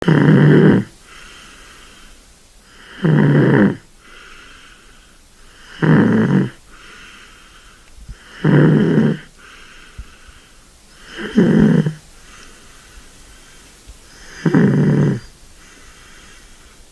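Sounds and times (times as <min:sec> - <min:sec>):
kitten snoring: 0:00.0 - 0:01.0, 0:02.7 - 0:04.2, 0:05.5 - 0:06.9, 0:08.1 - 0:10.2, 0:10.9 - 0:12.5, 0:14.0 - 0:16.5.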